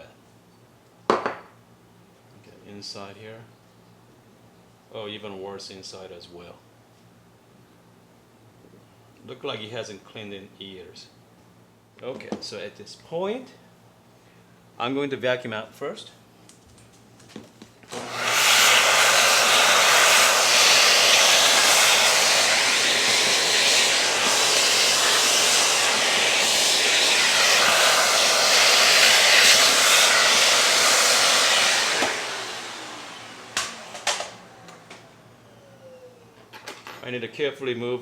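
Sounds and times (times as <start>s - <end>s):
vacuum cleaner running: 17.8s - 36.5s.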